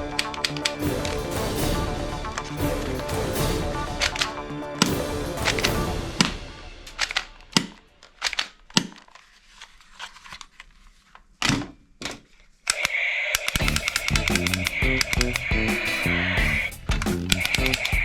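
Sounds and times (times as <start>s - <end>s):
music: 0.0s - 7.6s, 13.6s - 18.0s
plastic toy gun clicking: 7.0s - 9.2s, 12.7s - 15.9s, 17.0s - 18.0s.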